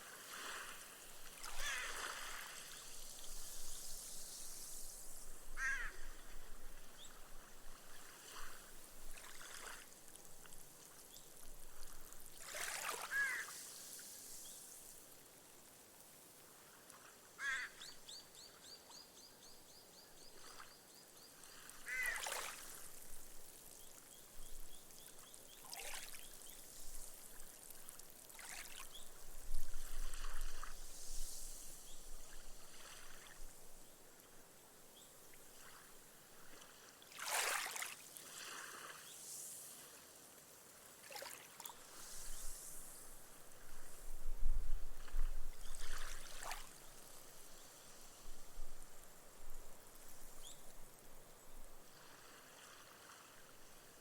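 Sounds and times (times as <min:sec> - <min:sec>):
gentle waves washing on sand: 0:00.0 - 0:05.5, 0:06.1 - 0:17.9, 0:21.3 - 0:34.6, 0:35.3 - 0:44.2, 0:44.8 - 0:51.1, 0:51.8 - 0:54.0
short bird calls: 0:13.1 - 0:13.6, 0:21.9 - 0:22.3
foam fizzing hiss: 0:41.9 - 0:43.4.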